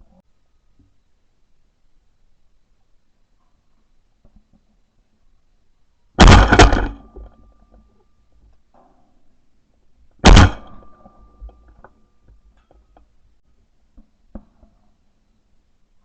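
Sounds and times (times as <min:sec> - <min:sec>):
shotgun blast: 0:06.2 - 0:07.2, 0:10.2 - 0:11.0.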